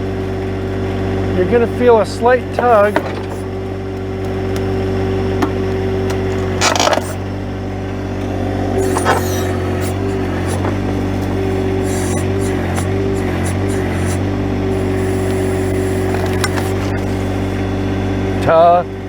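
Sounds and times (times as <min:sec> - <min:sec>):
tractor diesel engine running: 0:00.0 - 0:19.0
short hissing burst: 0:02.4 - 0:03.6, 0:06.6 - 0:07.4, 0:08.8 - 0:17.7.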